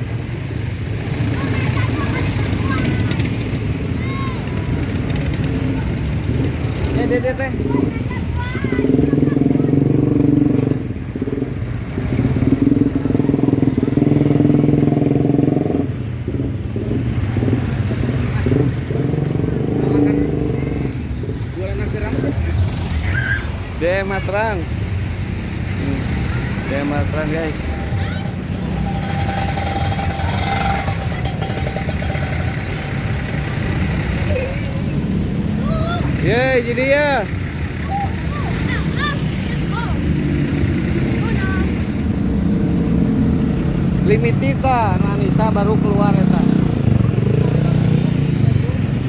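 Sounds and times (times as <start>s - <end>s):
bus engine rumbling: 0.0s - 49.0s
vehicle engine running: 25.0s - 43.3s.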